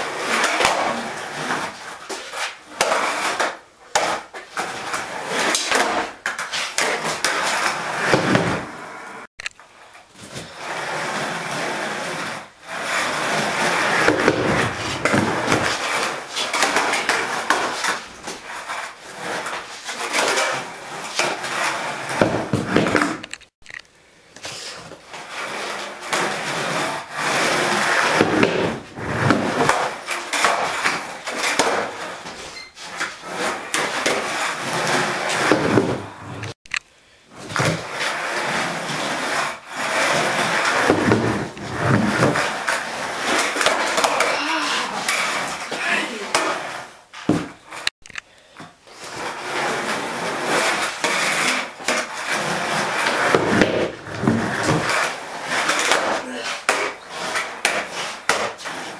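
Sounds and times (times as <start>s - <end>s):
skateboard wheels rolling: 0.0s - 36.6s, 37.3s - 47.9s, 48.6s - 58.9s
skateboard clacks: 0.2s - 8.8s, 12.9s - 23.5s, 26.0s - 32.4s, 49.2s - 58.9s.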